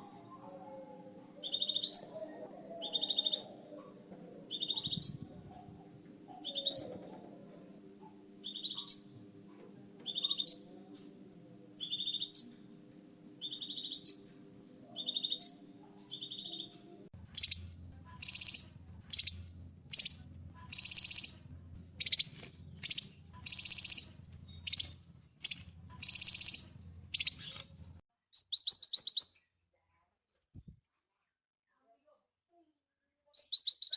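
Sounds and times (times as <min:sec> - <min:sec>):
bird singing high whistled notes: 0:01.4 - 0:02.2, 0:02.8 - 0:03.5, 0:04.5 - 0:05.3, 0:06.4 - 0:07.0, 0:08.4 - 0:09.2, 0:11.8 - 0:12.6, 0:13.4 - 0:14.3, 0:15.0 - 0:16.7, 0:17.3 - 0:21.4, 0:22.0 - 0:27.6, 0:28.4 - 0:29.4, 0:33.4 - 0:33.9.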